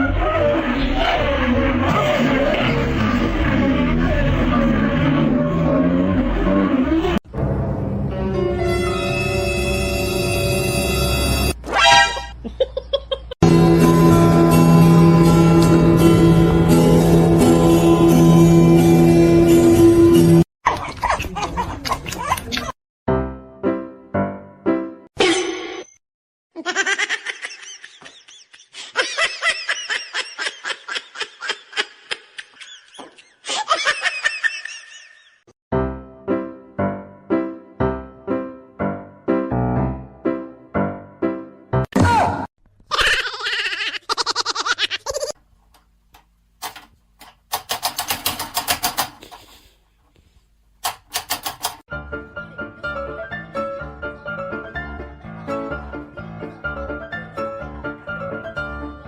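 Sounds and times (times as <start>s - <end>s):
piano music: 7.3s - 11.6s, 13.4s - 20.4s, 23.1s - 25.1s, 35.7s - 41.9s, 51.9s - 59.0s
high-pitched laughter: 20.7s - 22.8s, 26.6s - 35.4s, 42.9s - 45.4s
rapid sharp clicks: 50.8s - 51.8s.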